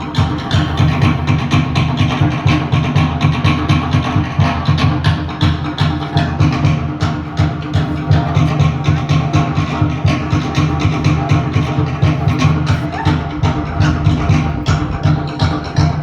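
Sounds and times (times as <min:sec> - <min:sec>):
fast drum beat: 0:00.0 - 0:16.0
bass line: 0:10.9 - 0:16.0.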